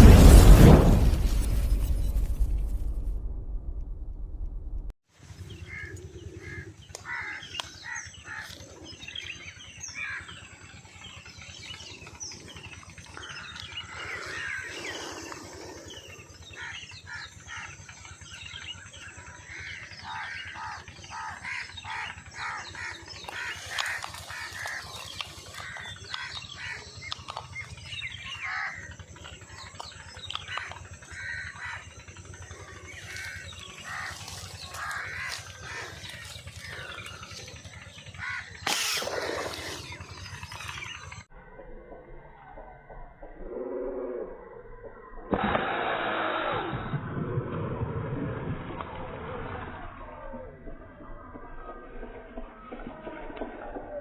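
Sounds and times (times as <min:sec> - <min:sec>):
birds chirping: 0:05.2 - 0:41.3
crows cawing: 0:05.6 - 0:08.8, 0:09.9 - 0:10.4, 0:13.2 - 0:17.8, 0:19.5 - 0:27.4, 0:28.0 - 0:29.0, 0:29.8 - 0:40.2.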